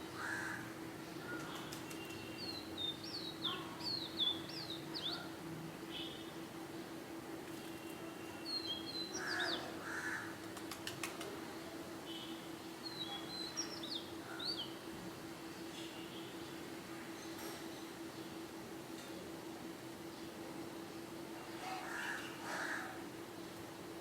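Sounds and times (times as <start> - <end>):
steady low hum: 0.0 - 24.0
crow cawing: 0.2 - 0.7, 9.2 - 10.4, 21.8 - 23.0
small birds chirping: 1.3 - 6.3, 8.3 - 9.7, 12.1 - 14.8.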